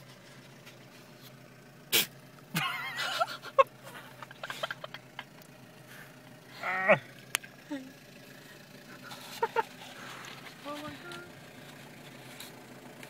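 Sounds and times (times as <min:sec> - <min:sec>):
deer sneezing: 0:01.9 - 0:02.2.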